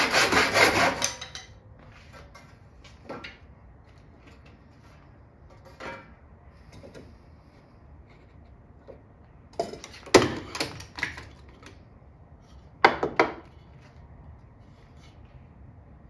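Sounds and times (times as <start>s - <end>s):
wood and tools knocking on workbench: 12.8s - 13.5s.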